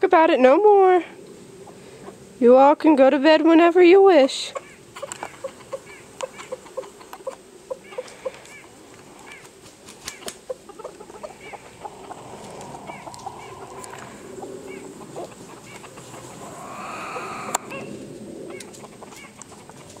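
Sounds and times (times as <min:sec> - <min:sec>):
chickens clucking: 0:01.6 - 0:02.2, 0:04.0 - 0:20.0
drawn-out chicken call: 0:04.3 - 0:20.0.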